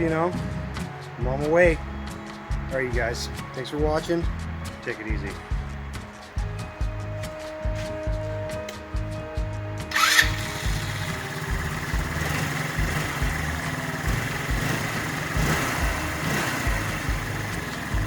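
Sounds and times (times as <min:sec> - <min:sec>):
music with thumping beat: 0:00.0 - 0:10.0, 0:10.6 - 0:18.0
engine running: 0:09.9 - 0:18.0.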